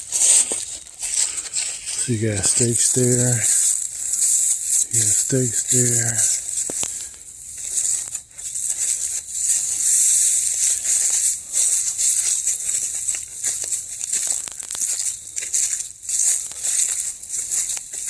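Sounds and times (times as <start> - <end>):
footsteps crunching through dry leaves: 0.0 - 18.0
twigs snapping: 6.5 - 9.7, 10.6 - 18.0.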